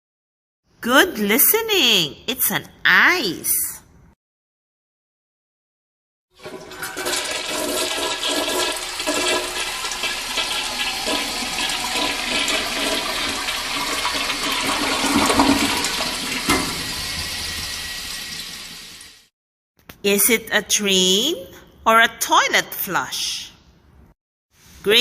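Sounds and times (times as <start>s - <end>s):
toilet flushing: 6.4s - 19.3s.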